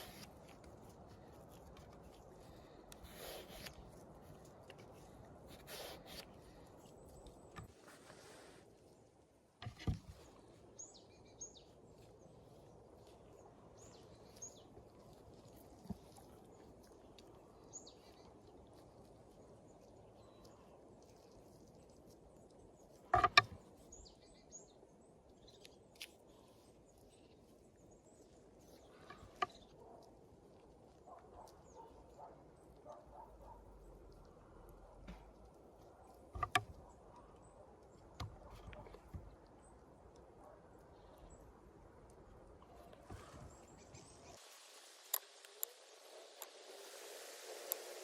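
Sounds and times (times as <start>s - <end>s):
sharp clicks or knocks: 23.2s - 23.6s, 36.4s - 36.7s.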